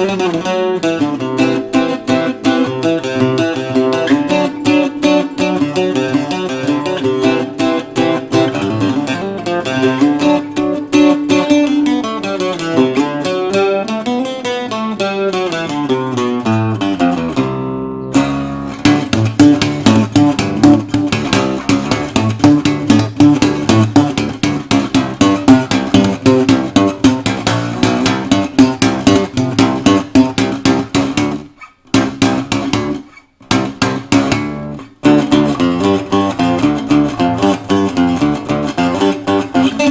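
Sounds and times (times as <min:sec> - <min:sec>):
guitar picking and strumming: 0:00.0 - 0:39.9.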